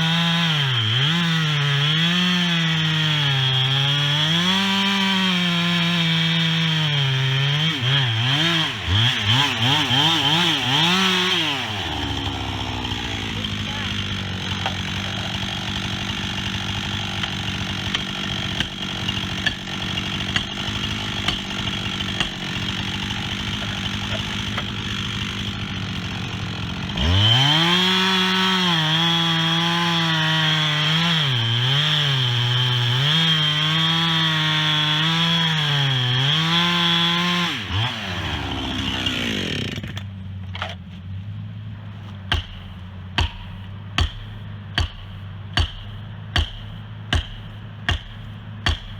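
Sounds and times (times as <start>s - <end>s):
chainsaw cutting wood: 0.0s - 40.8s, 42.1s - 48.9s
sharp knocks: 42.3s - 48.9s.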